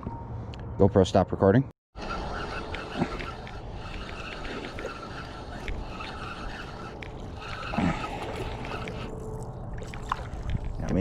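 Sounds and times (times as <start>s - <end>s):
fishing reel whirring: 2.0s - 10.1s.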